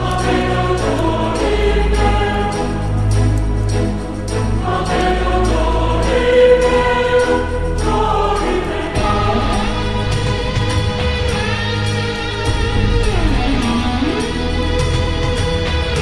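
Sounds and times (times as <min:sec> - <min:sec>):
choir singing held chords: 0:00.0 - 0:16.0
low bass: 0:05.3 - 0:16.0.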